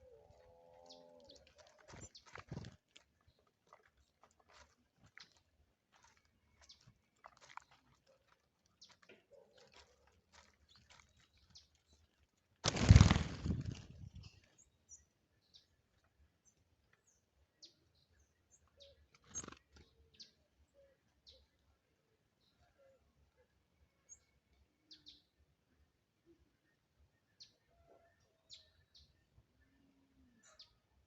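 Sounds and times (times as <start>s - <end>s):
birds chirping: 0.0s - 12.1s.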